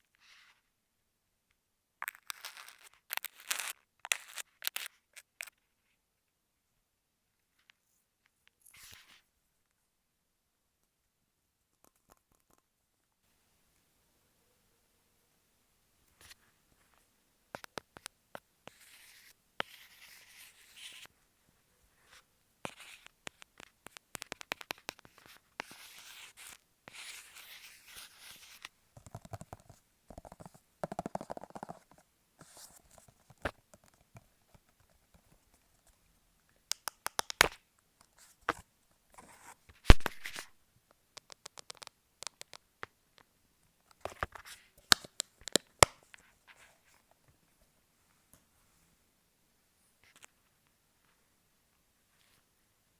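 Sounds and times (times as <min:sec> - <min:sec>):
sharp taps and clicks: 0:36.7 - 0:37.6.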